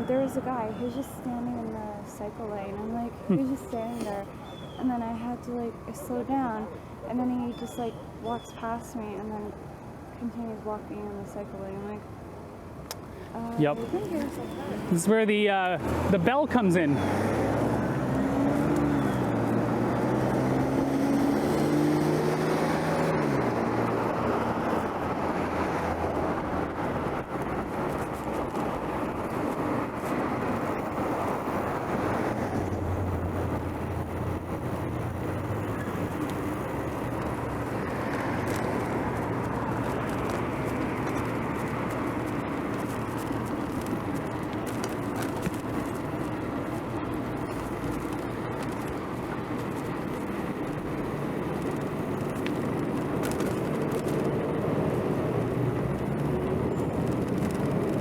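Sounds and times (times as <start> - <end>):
traffic and road noise: 0.0 - 58.0
low vehicle engine note: 13.4 - 21.0
vehicle engine passing by: 13.6 - 58.0.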